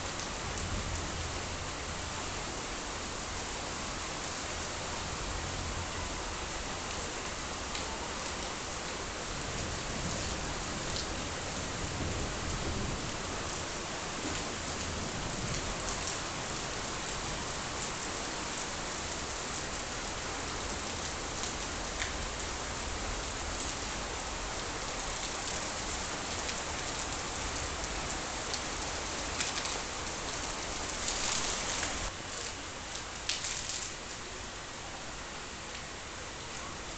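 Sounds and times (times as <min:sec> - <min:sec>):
light rain falling: 0:00.0 - 0:36.9
raindrops ticking: 0:27.8 - 0:34.0.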